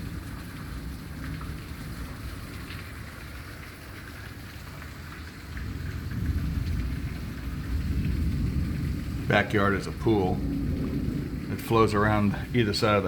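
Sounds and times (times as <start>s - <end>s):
heavy rain pouring: 0.0s - 13.0s
low rumble: 6.1s - 13.0s.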